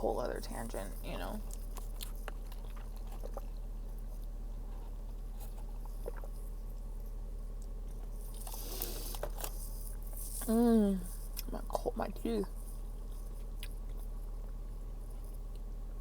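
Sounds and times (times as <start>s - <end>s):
low steady hum: 0.0s - 16.0s
person chewing food: 1.4s - 10.4s, 12.7s - 15.7s.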